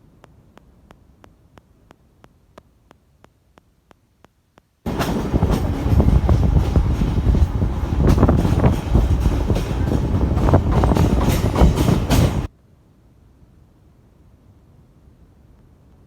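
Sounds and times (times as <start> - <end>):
moving train rumbling: 4.9 - 12.5.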